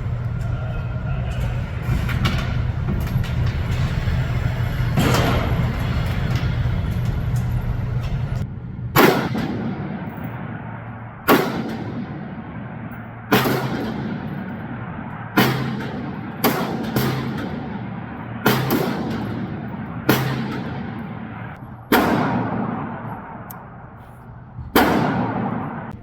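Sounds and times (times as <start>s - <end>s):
low steady rumble: 0.0s - 26.0s
rifle shots with echo: 9.0s - 26.0s.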